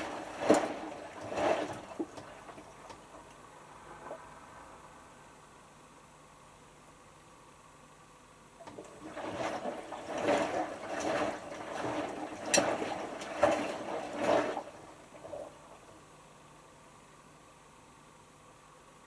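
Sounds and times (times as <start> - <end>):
water sloshing in washing machine: 0.0 - 4.5, 8.6 - 16.3.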